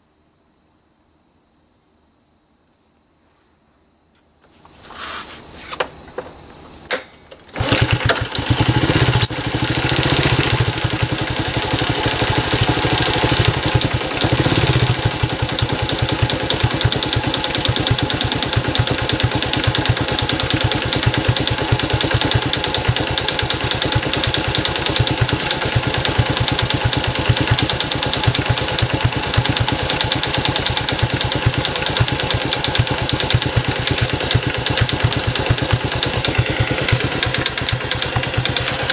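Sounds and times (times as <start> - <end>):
engine starting and running: 7.3 - 38.9
clicks: 33.6 - 38.9.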